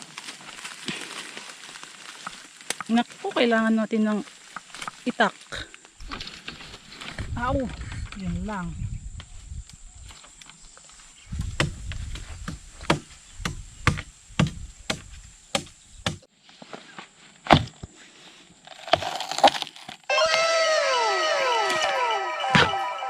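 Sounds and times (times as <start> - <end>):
chopping into bamboo: 11.5 - 16.3, 17.5 - 17.9
falling ringing tones: 20.1 - 23.0.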